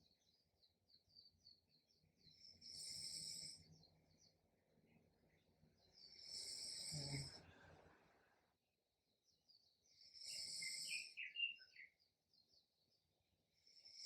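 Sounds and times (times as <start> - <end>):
person snoring: 6.2 - 7.4.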